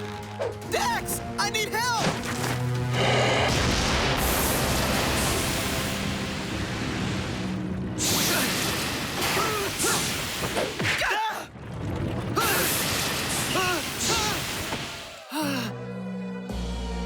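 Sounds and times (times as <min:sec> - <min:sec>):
creature shrieks: 0:12.4 - 0:15.7.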